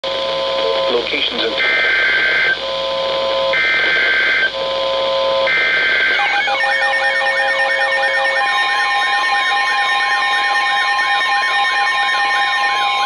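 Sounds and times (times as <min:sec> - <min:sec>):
electronic alert tones: 0:05.4 - 0:13.0
steady beeping tones: 0:05.4 - 0:13.0.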